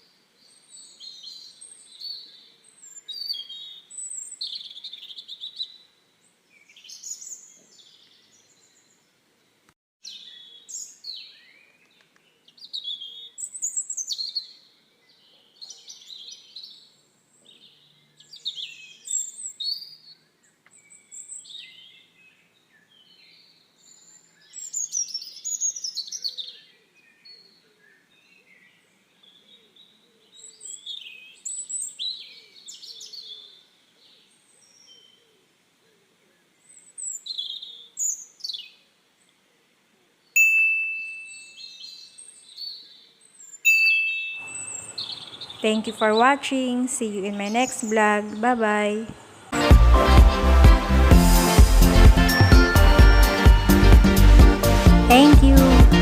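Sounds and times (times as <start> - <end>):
songbirds chirping: 0.0 - 40.5, 41.3 - 49.6.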